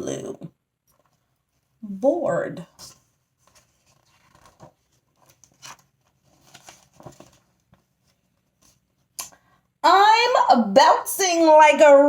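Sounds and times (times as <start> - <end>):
paper page rustling: 2.8 - 9.1
light ticks of page turning: 2.8 - 9.3.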